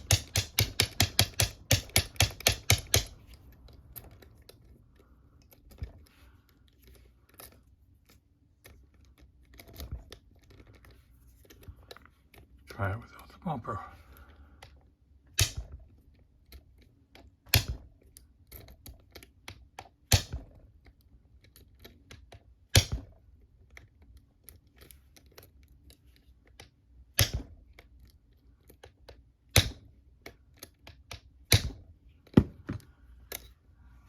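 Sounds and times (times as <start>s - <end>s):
sharp metallic knocks: 0.0s - 3.1s.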